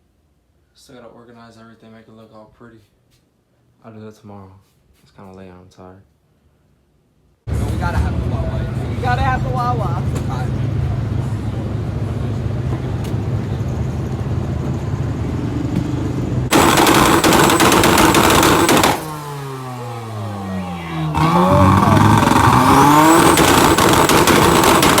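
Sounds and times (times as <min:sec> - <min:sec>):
car engine accelerating hard: 0:07.5 - 0:25.0.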